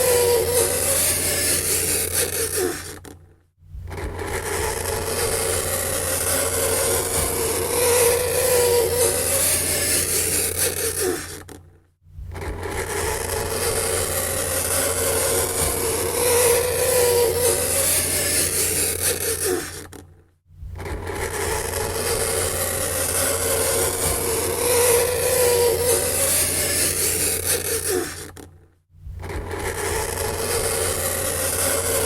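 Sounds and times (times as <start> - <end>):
fingernails scraping a chalkboard: 3.9 - 11.6, 12.7 - 20.0, 20.9 - 28.4.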